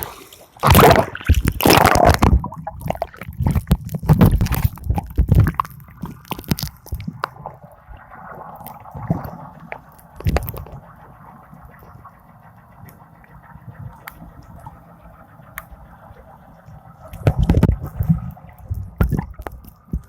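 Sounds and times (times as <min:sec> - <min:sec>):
splashes and knocks: 0:00.0 - 0:07.4, 0:10.2 - 0:10.8, 0:17.2 - 0:20.0
faint steady hum: 0:00.0 - 0:20.0
water drips: 0:00.0 - 0:20.0
water sloshing and gurgling: 0:00.0 - 0:20.0.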